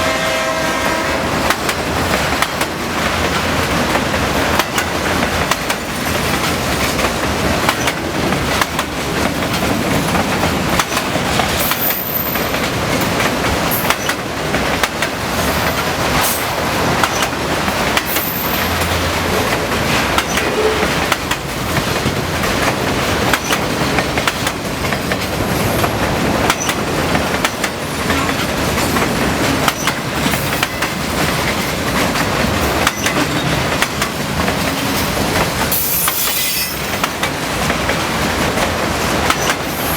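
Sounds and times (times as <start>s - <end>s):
train wheels clattering over rails: 0.9s - 39.9s
high-pitched wheel squeals: 35.8s - 36.9s.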